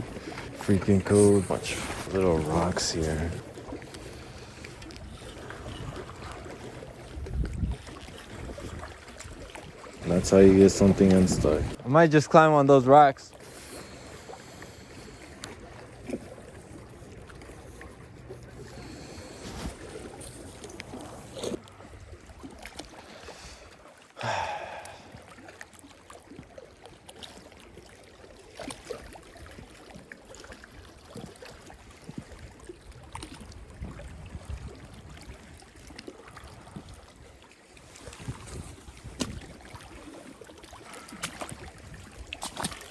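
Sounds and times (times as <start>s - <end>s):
water rush: 0.0s - 26.4s
water lapping against rocks: 0.0s - 42.9s.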